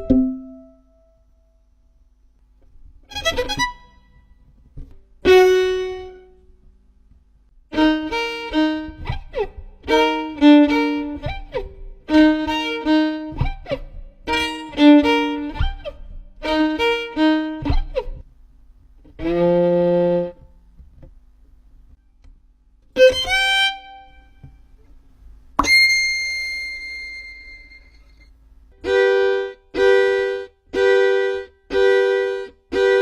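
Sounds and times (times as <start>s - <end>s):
solo violin: 3.0s - 4.3s, 5.2s - 6.4s, 7.7s - 18.2s, 19.1s - 20.5s, 23.0s - 24.2s, 28.8s - 33.0s.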